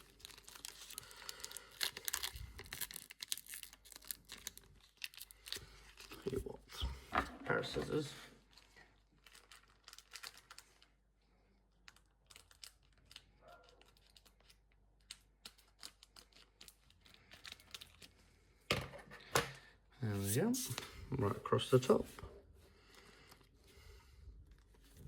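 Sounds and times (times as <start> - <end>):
wrapper crinkling: 0.0 - 6.6, 7.9 - 18.2.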